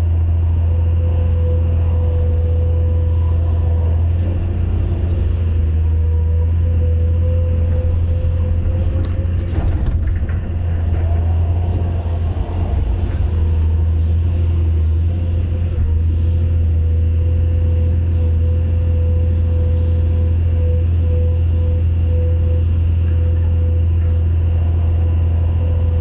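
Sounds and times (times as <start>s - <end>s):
excavator diesel engine running: 0.0s - 26.0s.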